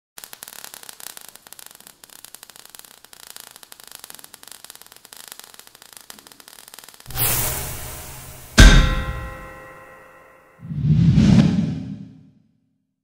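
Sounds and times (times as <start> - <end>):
crackling static: 0.2 - 7.5.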